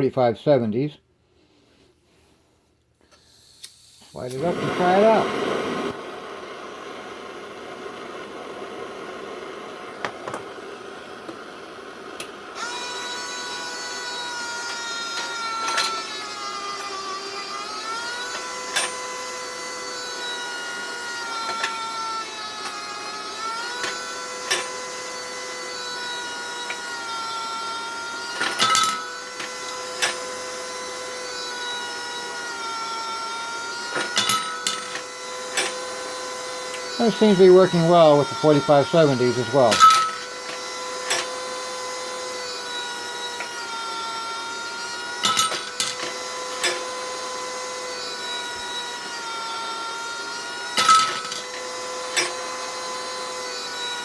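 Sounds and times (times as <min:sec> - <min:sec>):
torch hiss: 0:03.2 - 0:14.2
machine whine wavering in pitch: 0:11.8 - 0:54.0.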